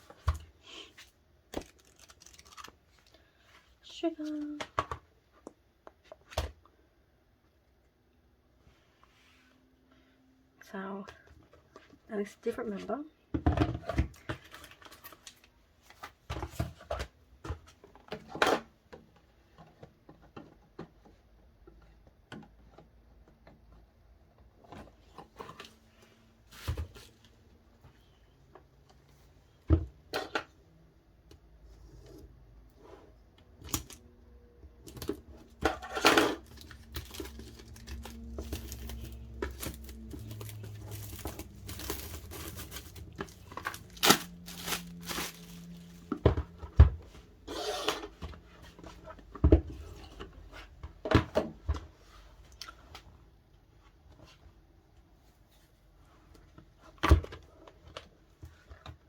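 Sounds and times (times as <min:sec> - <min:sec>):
plastic crinkle: 0:01.5 - 0:03.1, 0:35.9 - 0:46.2
plastic packaging being handled: 0:01.5 - 0:03.1, 0:34.8 - 0:46.5.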